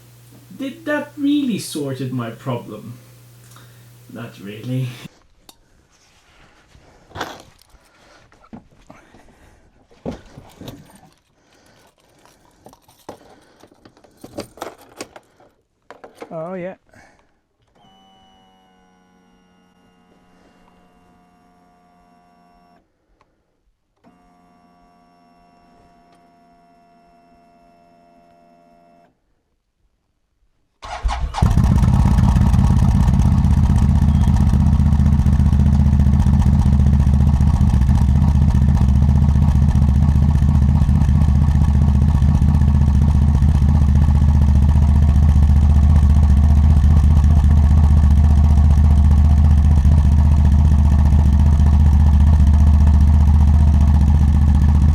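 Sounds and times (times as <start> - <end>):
faint steady whine: 0.0 - 5.2
atv engine starting and running: 30.8 - 54.9.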